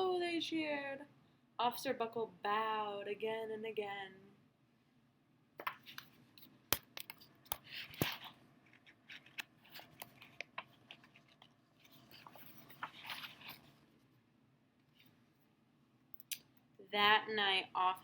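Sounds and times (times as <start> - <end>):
book pages rustling and turning: 5.6 - 14.2.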